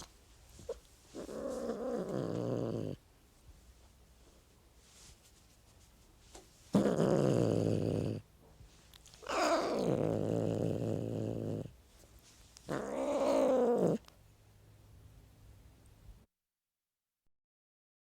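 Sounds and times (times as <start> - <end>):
cat growling and yowling: 0.7 - 3.0, 6.8 - 8.2, 9.2 - 11.7, 12.7 - 14.1.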